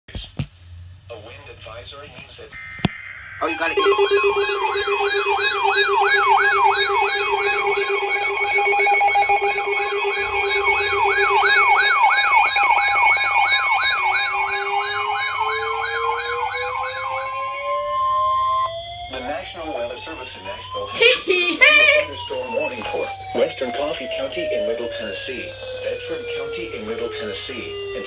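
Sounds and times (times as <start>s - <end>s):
tone rising in pitch: 2.6s - 20.8s
lower steady tone: 2.6s - 20.9s
steady warning alert tone: 2.6s - 20.9s
fast-warbling siren-like alarm: 2.6s - 28.0s.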